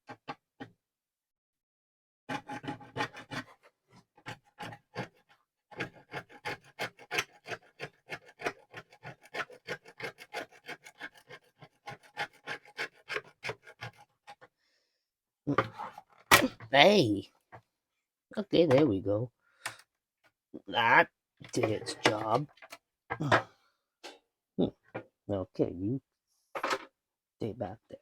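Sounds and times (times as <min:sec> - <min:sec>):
hand tool scraping hot glue: 0:02.3 - 0:03.6, 0:04.2 - 0:14.4, 0:21.5 - 0:22.5.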